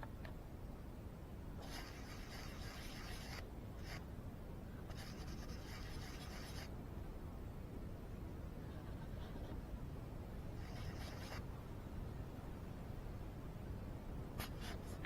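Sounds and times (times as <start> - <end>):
low steady rumble: 0.0 - 15.0
faint scratchy rubbing: 1.6 - 4.0, 4.9 - 6.7, 10.6 - 11.4.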